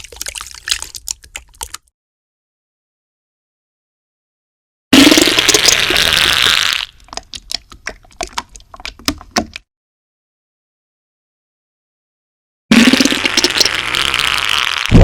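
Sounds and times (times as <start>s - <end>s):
loud sputtering fart: 4.9s - 6.9s, 12.7s - 15.0s.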